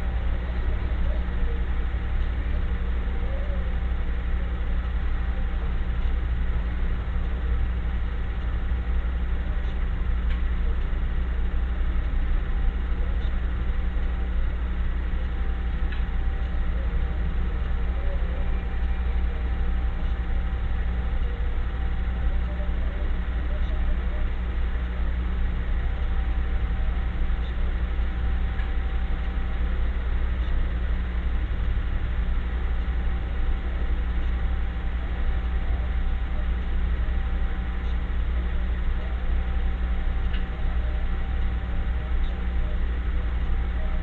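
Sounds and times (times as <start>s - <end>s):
faint constant tones: 0.0s - 44.0s
steady low hum: 0.0s - 44.0s.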